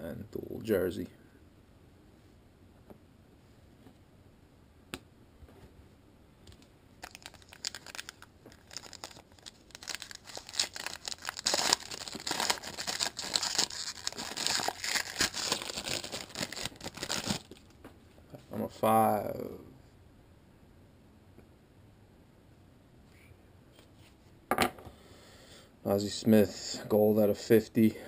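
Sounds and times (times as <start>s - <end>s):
foil wrapper crinkling and tearing: 6.5s - 17.8s.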